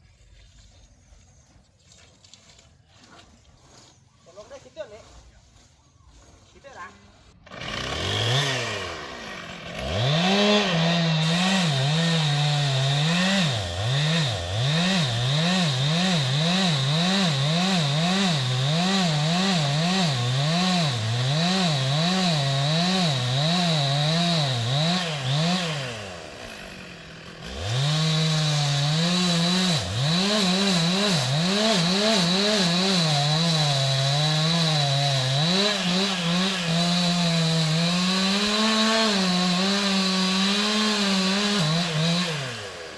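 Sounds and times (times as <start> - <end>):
chainsaw cutting wood: 7.3 - 42.9.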